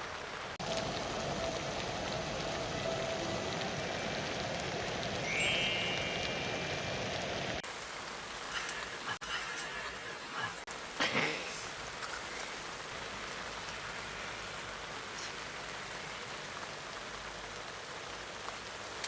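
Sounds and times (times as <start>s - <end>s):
meat sizzling in hot oil: 0.6s - 9.9s.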